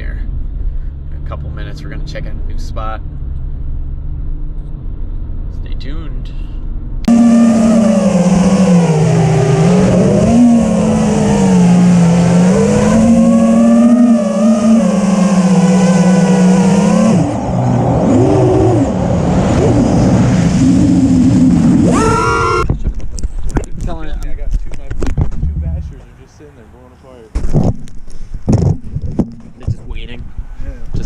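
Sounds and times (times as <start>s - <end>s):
quadcopter motors whining: 7.1s - 19.0s, 20.6s - 22.7s.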